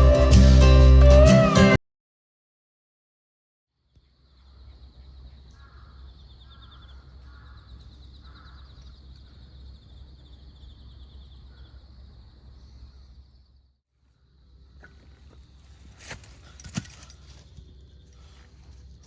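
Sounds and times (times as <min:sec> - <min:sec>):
short bird calls: 0:03.9 - 0:15.1
low rumble of wind: 0:04.2 - 0:19.0.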